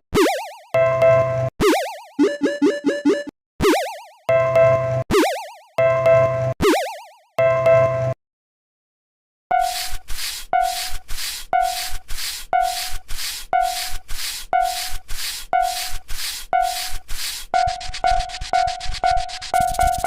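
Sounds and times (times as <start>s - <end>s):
level crossing warning bell ringing: 13.6s - 14.0s, 14.6s - 15.0s, 15.6s - 16.0s.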